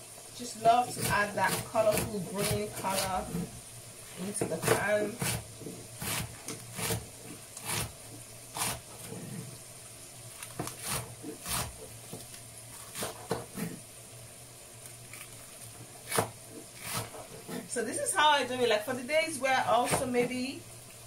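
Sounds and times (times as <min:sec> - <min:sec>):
knife chopping on cutting board: 0:16.1 - 0:17.6.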